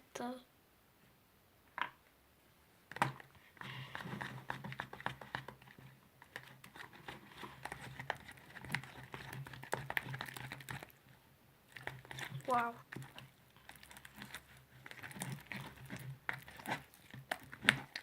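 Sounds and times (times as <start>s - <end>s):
slime wet clicks and crackles: 11.7s - 18.0s.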